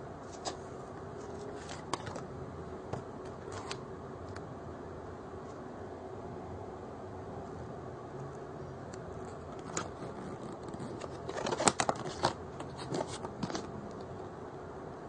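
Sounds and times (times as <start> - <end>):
fan-like hum: 0.0 - 15.0
packaging clicks and rustles: 1.3 - 2.2, 9.6 - 13.7.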